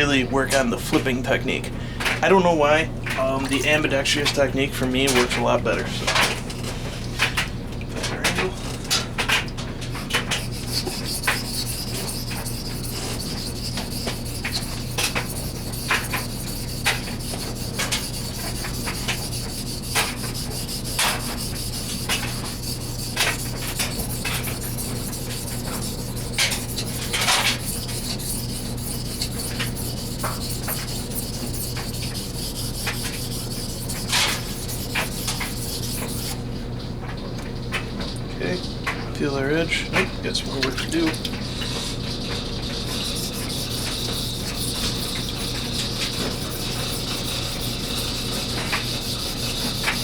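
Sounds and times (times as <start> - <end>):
knife rubbing on wet whetstone: 10.0 - 36.4, 40.3 - 50.0.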